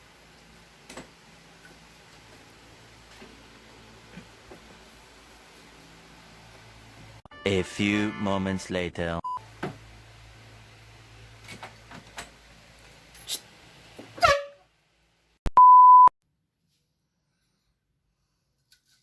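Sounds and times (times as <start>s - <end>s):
electronic beep tones: 15.5s - 16.1s.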